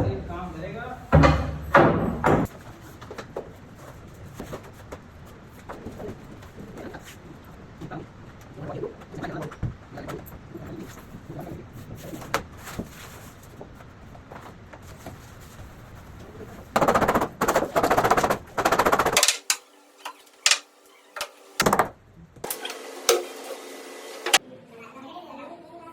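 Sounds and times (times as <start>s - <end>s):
sharp knocks: 1.1s - 2.5s
power tool bursts: 22.4s - 24.4s.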